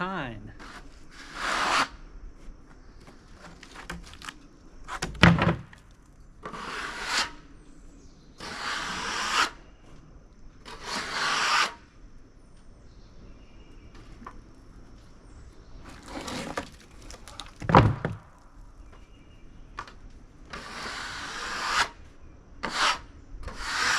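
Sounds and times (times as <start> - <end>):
rasping across dry wood: 0.6 - 2.0, 6.4 - 7.4, 8.4 - 9.6, 10.6 - 11.8, 20.5 - 22.0, 22.6 - 23.9
heavy wood knock: 17.6 - 18.3.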